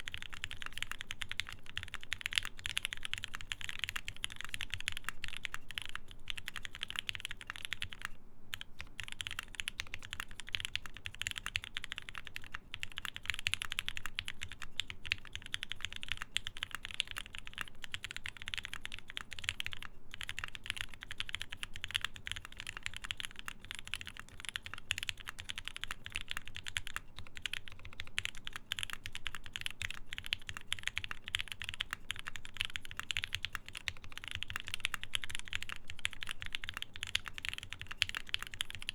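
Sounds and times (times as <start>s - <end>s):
fast typing on mechanical keyboard: 0.0s - 38.9s.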